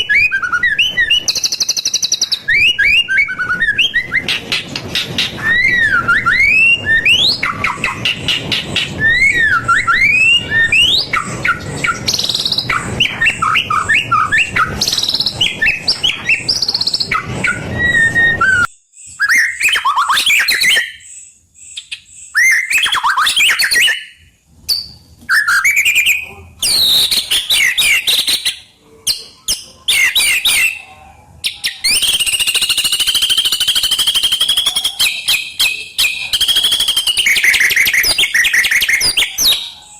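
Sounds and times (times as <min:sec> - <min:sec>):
high bird trill: 0:00.0 - 0:39.9
songbird singing whistled phrases: 0:00.0 - 0:39.9.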